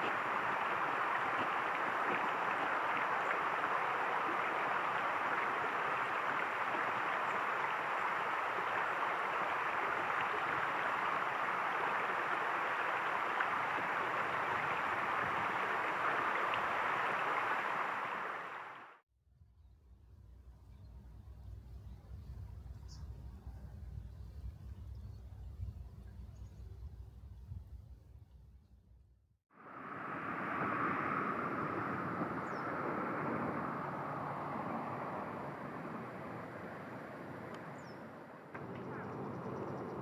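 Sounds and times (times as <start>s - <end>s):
stream flowing: 0.0s - 19.0s, 29.5s - 39.3s.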